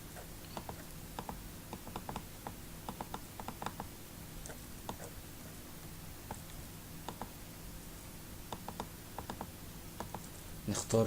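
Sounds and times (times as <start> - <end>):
faint low hum: 0.0 - 11.0
keyboard and mouse clicks: 0.2 - 5.1, 6.3 - 7.4, 8.5 - 10.4.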